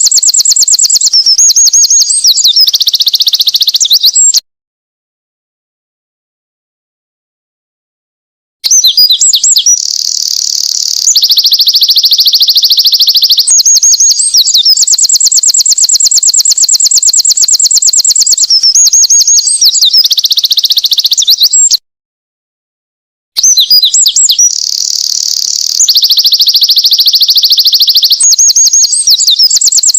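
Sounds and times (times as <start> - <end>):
wren singing high trills: 0.0 - 4.4, 8.6 - 21.8, 23.4 - 29.9.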